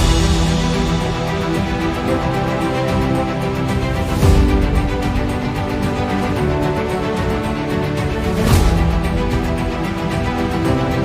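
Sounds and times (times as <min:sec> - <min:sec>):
low hit with hiss rush: 0:00.0 - 0:05.5
background music with beat: 0:00.0 - 0:11.0.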